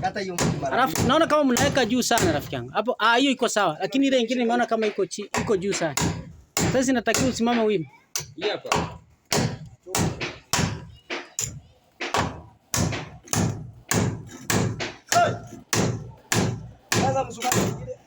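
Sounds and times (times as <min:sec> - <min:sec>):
hammer driving nails into timber: 0:05.3 - 0:17.9.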